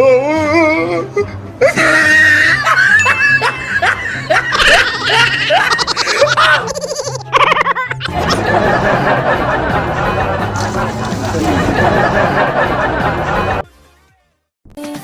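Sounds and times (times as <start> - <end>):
background music: 0.0 - 15.0
short rising laughs: 2.6 - 13.6.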